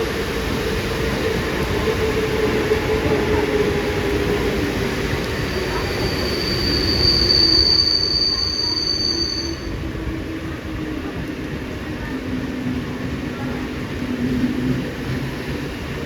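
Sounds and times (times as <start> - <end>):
electric train rumbling: 0.0 - 16.0
high wheel squeal: 4.2 - 9.9.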